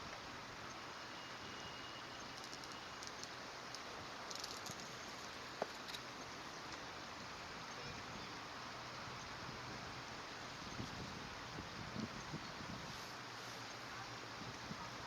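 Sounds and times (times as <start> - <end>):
faint high ticks: 2.2 - 6.9.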